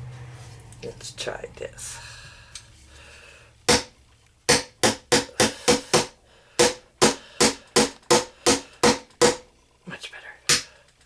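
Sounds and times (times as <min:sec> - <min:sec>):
hammer striking chisel: 0:03.7 - 0:03.9, 0:04.5 - 0:09.5.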